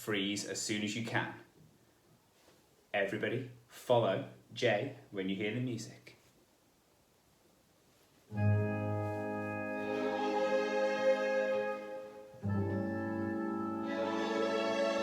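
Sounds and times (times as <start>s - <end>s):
music with long held chords: 8.3s - 15.0s.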